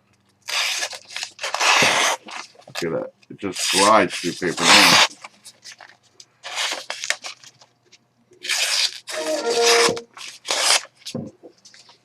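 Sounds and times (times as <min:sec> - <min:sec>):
knife slicing paper: 0:04.6 - 0:05.1.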